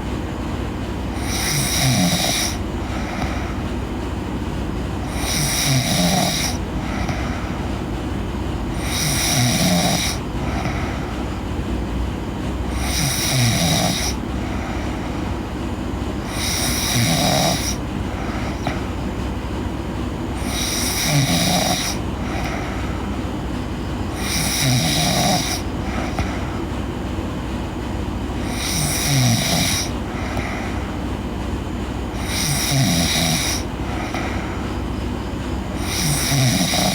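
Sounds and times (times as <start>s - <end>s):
steady low hum: 0.0s - 36.9s
girl snoring: 1.2s - 3.6s, 5.0s - 7.7s, 8.8s - 11.1s, 12.7s - 15.2s, 16.3s - 19.0s, 20.4s - 23.1s, 24.1s - 26.5s, 28.4s - 31.0s, 32.2s - 34.7s, 35.8s - 36.9s.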